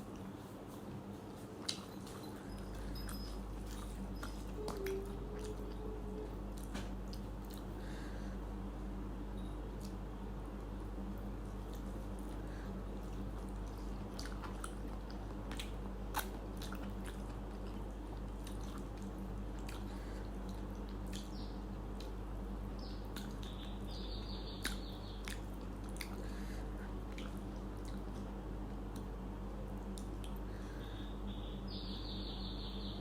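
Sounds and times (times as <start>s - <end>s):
person chewing food: 0.0s - 7.8s, 11.4s - 22.3s, 23.0s - 23.9s, 24.6s - 29.1s
steady low hum: 0.0s - 33.0s
mouth clicks and smacks: 13.7s - 19.9s, 20.5s - 22.2s, 24.6s - 26.3s.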